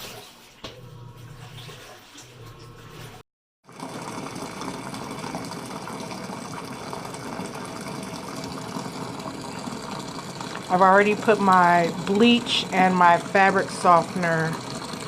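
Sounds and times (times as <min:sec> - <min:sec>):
water running into washing machine: 0:00.0 - 0:15.0.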